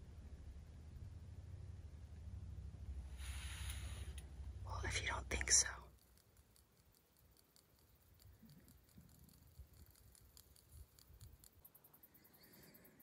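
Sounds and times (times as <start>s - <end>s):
low background rumble: 0.0s - 11.7s
faint small ticks: 3.2s - 4.3s, 5.0s - 13.0s.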